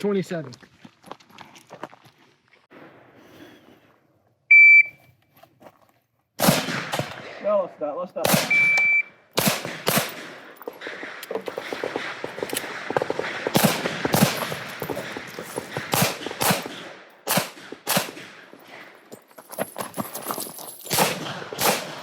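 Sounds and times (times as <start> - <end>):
gunshots: 6.4 - 19.0, 20.9 - 22.0.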